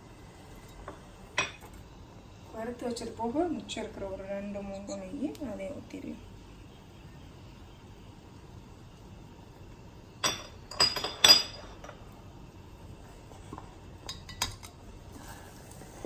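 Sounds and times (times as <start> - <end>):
utensils clinking against a pot: 10.2 - 12.0, 14.0 - 14.8.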